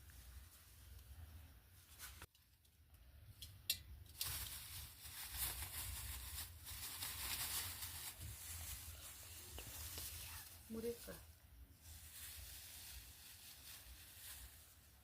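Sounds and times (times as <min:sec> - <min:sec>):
leaves rustling and tearing: 0:04.1 - 0:11.2, 0:11.8 - 0:15.0.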